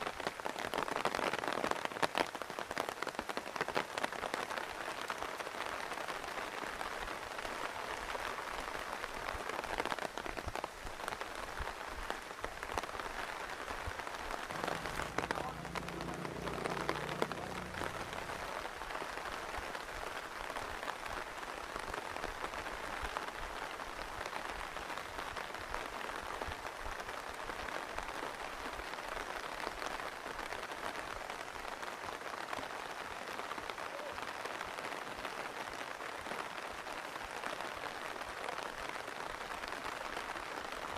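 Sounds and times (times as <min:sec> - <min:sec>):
steady rain falling: 0:00.0 - 0:40.9
low hum: 0:14.5 - 0:18.7.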